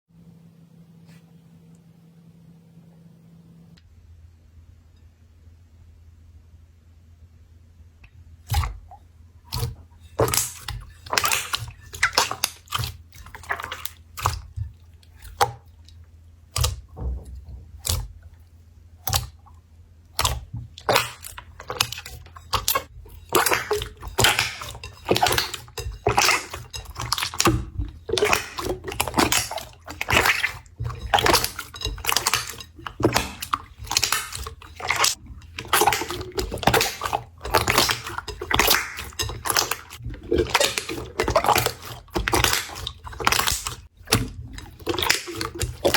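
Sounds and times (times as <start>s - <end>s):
slime squishing and clicking: 9.5s - 45.9s.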